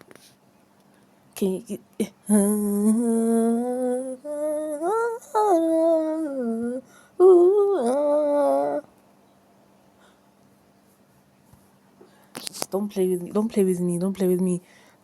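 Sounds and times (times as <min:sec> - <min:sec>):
woman humming: 0:01.4 - 0:08.9.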